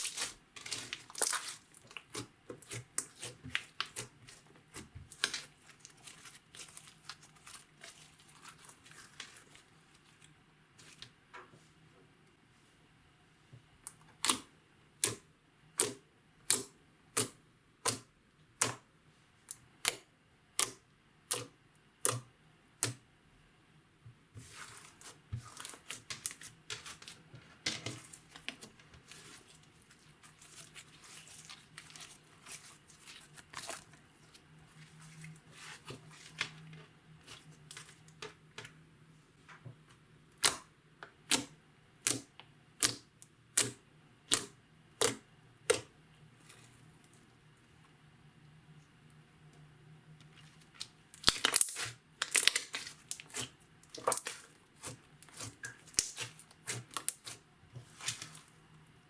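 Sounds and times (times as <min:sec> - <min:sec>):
slime crackling pops and squishes: 0:50.8 - 0:57.4.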